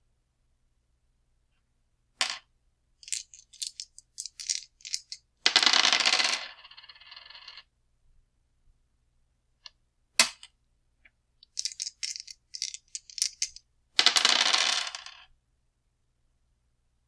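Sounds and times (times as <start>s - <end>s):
dice clattering: 3.0s - 7.6s, 11.4s - 15.2s
dice rattling when shaken: 3.0s - 7.6s, 11.4s - 15.2s.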